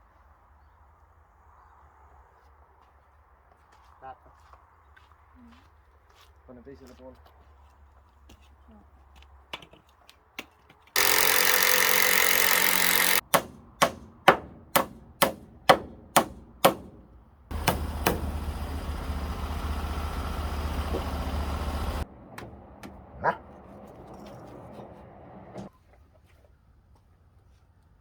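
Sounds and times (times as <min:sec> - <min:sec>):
power tool running: 0:11.0 - 0:13.5, 0:17.5 - 0:25.7
hammer blows on timber: 0:11.0 - 0:18.5.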